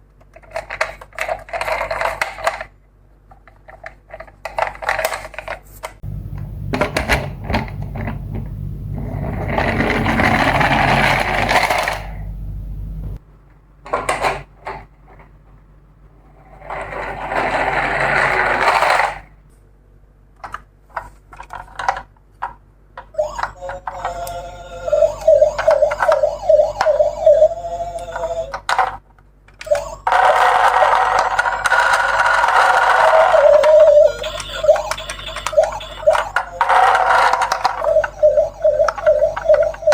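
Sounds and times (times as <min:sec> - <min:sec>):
plastic toy cars clacking: 0:00.2 - 0:06.0, 0:06.8 - 0:12.2, 0:16.6 - 0:19.3, 0:20.4 - 0:39.9
low hum: 0:06.0 - 0:19.5
small wheels whirring: 0:07.0 - 0:12.4, 0:16.4 - 0:19.3, 0:29.7 - 0:39.9
toy electronic siren wavering: 0:23.2 - 0:28.6, 0:29.7 - 0:39.9.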